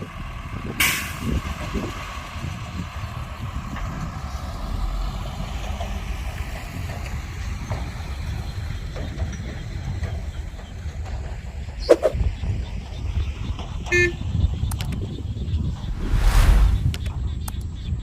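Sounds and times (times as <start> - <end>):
heavy diesel engine rumbling: 0.0 - 13.0.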